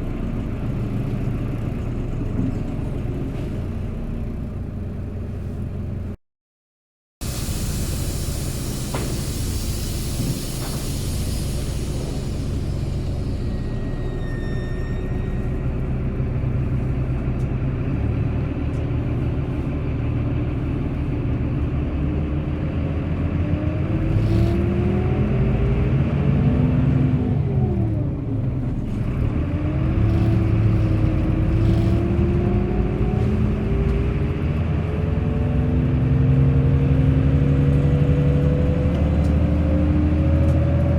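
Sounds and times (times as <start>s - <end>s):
bus engine accelerating: 0.0s - 6.2s, 7.2s - 40.9s
thin high squeal: 12.8s - 16.0s.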